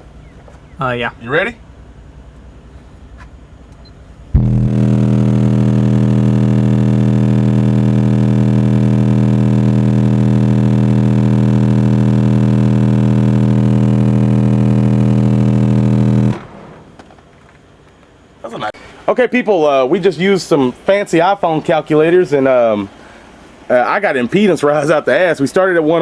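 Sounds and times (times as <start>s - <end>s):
subwoofer low test tone: 4.0s - 16.4s.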